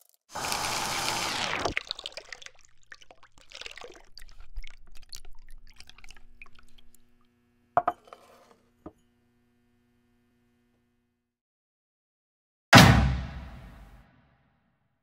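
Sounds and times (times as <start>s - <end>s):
liquid pouring into glass: 0.4s - 7.9s
glass clinking and knocking: 7.8s - 8.2s.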